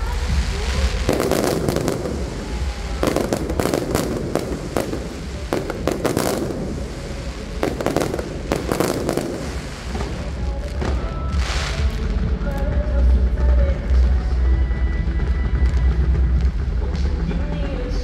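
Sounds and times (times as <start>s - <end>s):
fireworks bangs: 0.0s - 12.4s.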